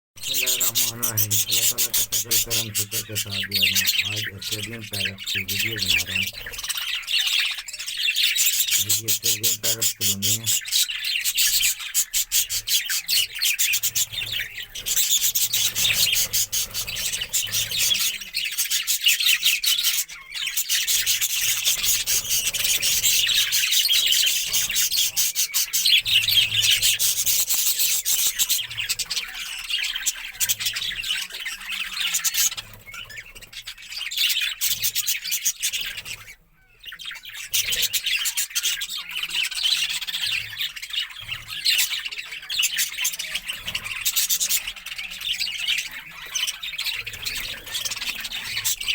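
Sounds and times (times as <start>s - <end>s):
budgerigars chattering: 0.2s - 48.9s.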